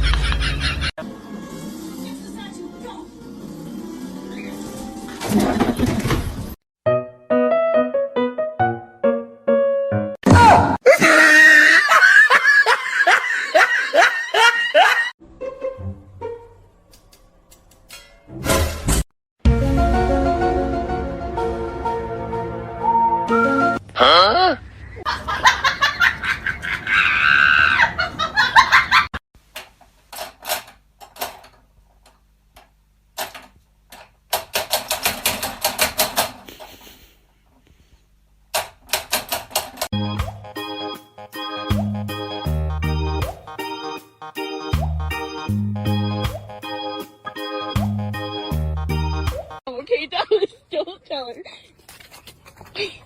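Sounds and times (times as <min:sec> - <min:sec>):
keyboard music notes: 0:06.8 - 0:10.2, 0:19.4 - 0:23.8, 0:39.9 - 0:49.6
excited voices or laughter: 0:10.8 - 0:15.1, 0:25.0 - 0:29.1
loud shrieking cries: 0:26.8 - 0:28.0.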